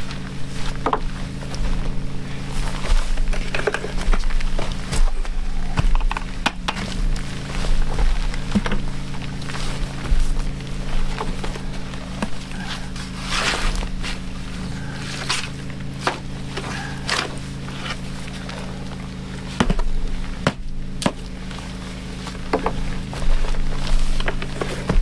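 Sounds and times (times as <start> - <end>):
footsteps on soft ground: 0.0 - 25.0
shovel scraping wet dirt: 0.0 - 25.0
steady low hum: 0.0 - 25.0.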